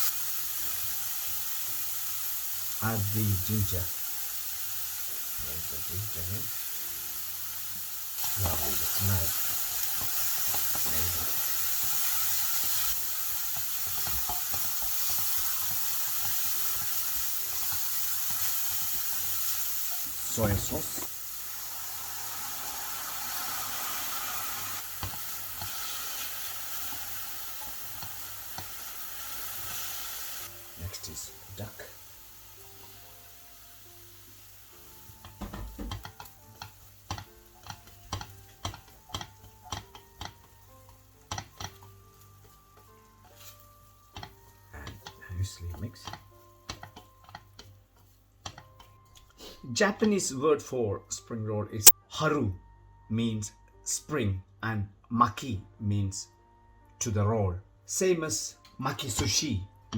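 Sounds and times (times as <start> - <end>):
vegetables sizzling in a pan: 0.0 - 49.6
utensil knocking against pan: 35.2 - 40.5.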